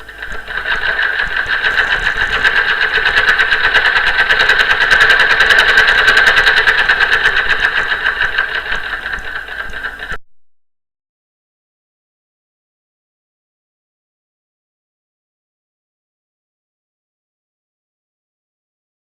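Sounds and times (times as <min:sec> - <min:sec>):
sewing machine running: 0:00.0 - 0:10.2.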